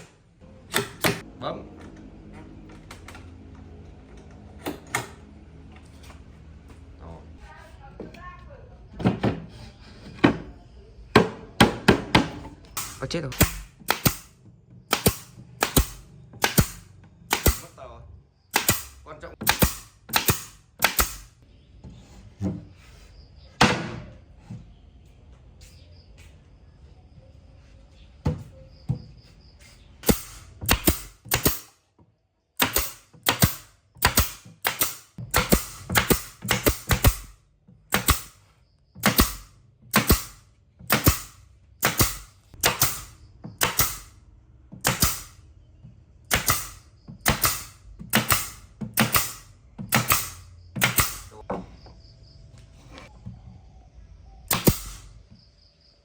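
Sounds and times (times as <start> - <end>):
sharp loud impacts: 12.8 - 17.7, 18.5 - 21.4.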